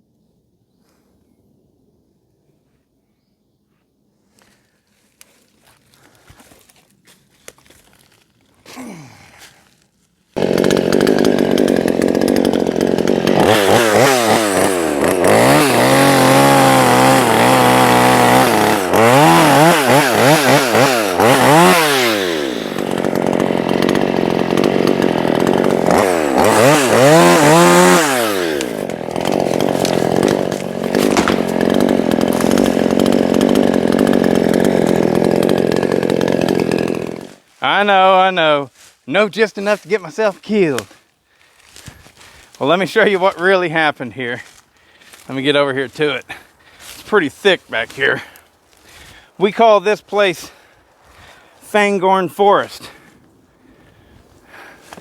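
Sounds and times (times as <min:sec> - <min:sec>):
chainsaw revving: 0:10.3 - 0:38.2, 0:41.6 - 0:53.1.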